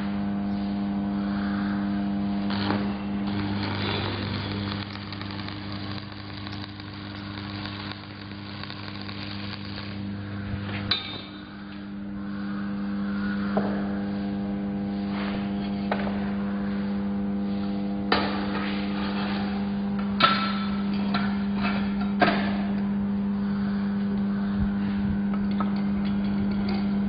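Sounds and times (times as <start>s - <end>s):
welding machine hum: 0.0s - 12.9s
welding arc hissing: 2.3s - 11.6s.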